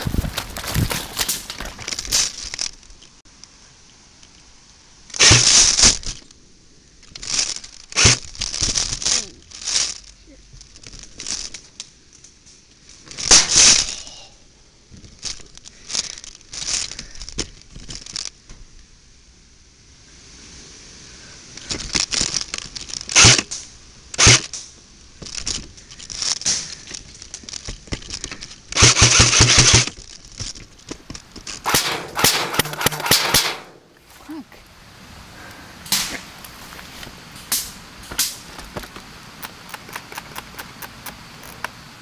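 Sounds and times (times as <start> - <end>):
footsteps crunching dry leaves: 0.0 - 2.8, 35.9 - 39.1.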